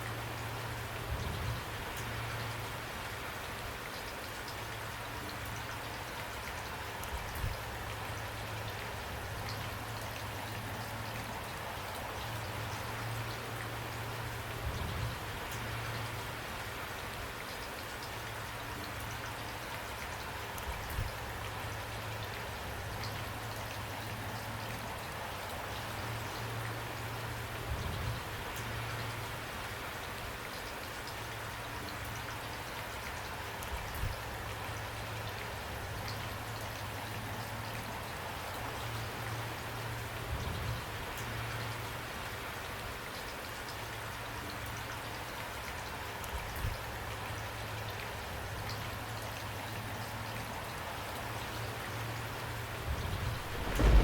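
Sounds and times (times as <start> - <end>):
steady rain hiss: 0.0 - 54.0
dull low thuds: 53.1 - 54.0
low rumble: 53.1 - 54.0.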